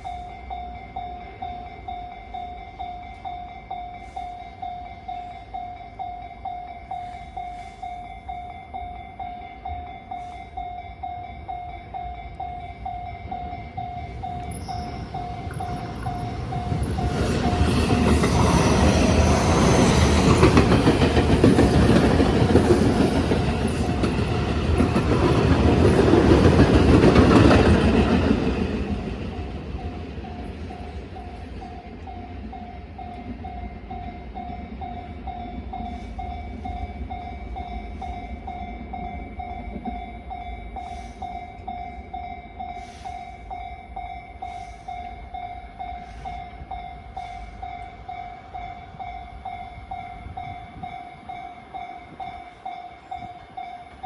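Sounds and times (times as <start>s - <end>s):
level crossing warning bell: 0.0s - 54.0s
train wheels clattering over rails: 13.7s - 31.9s.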